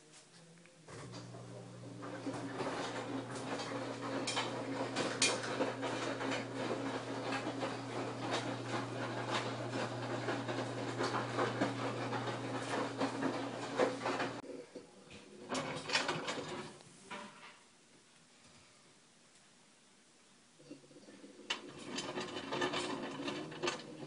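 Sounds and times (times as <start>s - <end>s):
washer motor hum: 0.9s - 16.8s, 20.7s - 24.0s
clicking and grinding: 1.0s - 16.8s, 20.7s - 24.0s.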